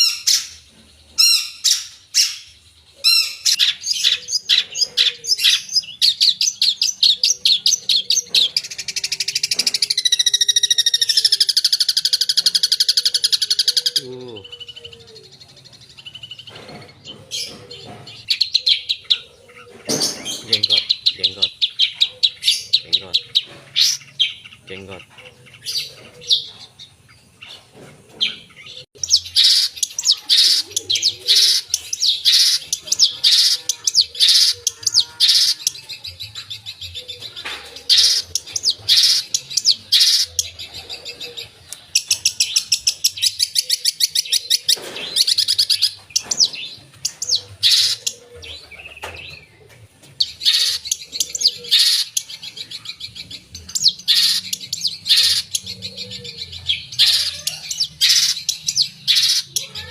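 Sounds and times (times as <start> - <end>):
shrike singing chirps and trills: 0.0 - 59.9.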